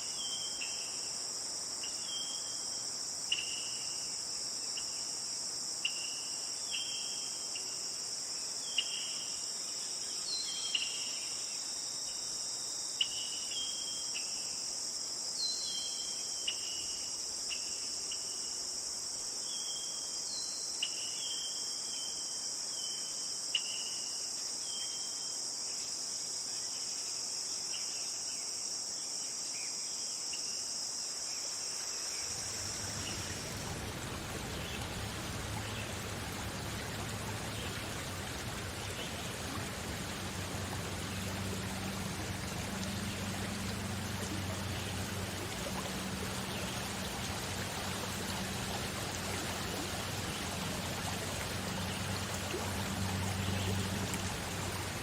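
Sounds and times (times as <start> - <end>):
high-pitched insect chorus: 0.0 - 55.0
water rushing: 32.2 - 55.0.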